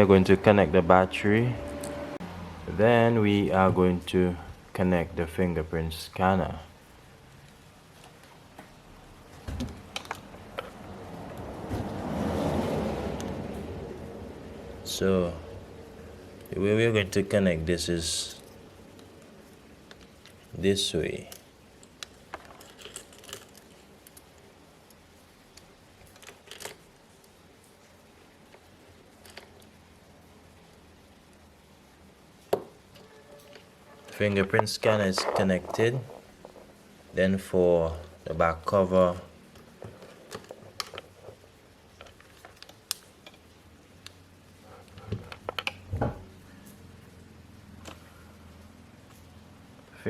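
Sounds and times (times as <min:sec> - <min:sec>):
phone parts and tools clicking: 0:21.3 - 0:26.9, 0:39.6 - 0:43.5.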